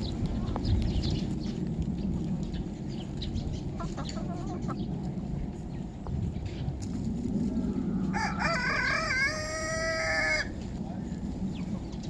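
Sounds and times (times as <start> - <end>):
low rumble: 0.0 - 12.0
chickens clucking: 3.1 - 5.2.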